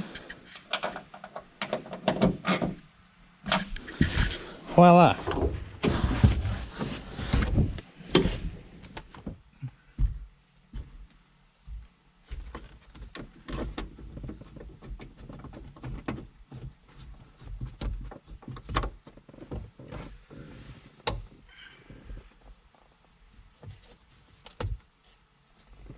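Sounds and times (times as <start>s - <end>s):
clicks knocks and thumps of tools: 0.1s - 2.8s.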